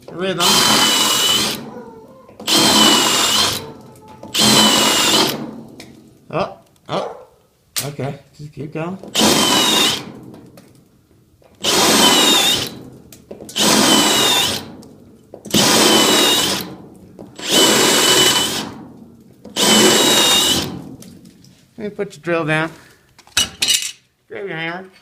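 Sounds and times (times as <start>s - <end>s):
power drill drilling rivets: 0.0s - 1.7s, 2.3s - 5.9s, 9.0s - 10.4s, 11.4s - 18.8s, 19.4s - 20.9s.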